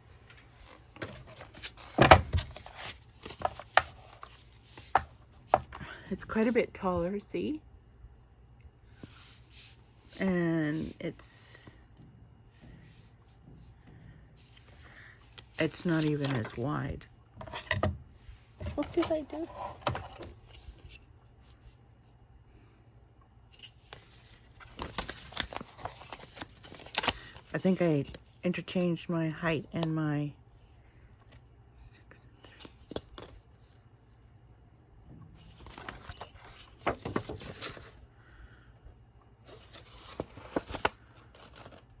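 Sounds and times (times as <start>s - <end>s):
paper rustling: 0.6s - 5.6s, 15.4s - 16.6s, 23.8s - 28.3s, 35.5s - 38.0s, 39.4s - 42.0s.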